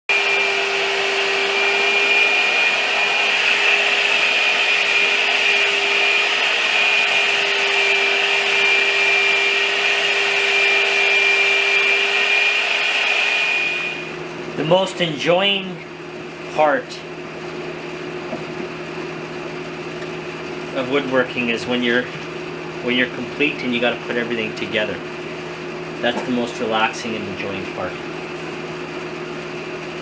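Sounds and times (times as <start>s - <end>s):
power tool motor whining: 0.1s - 14.1s.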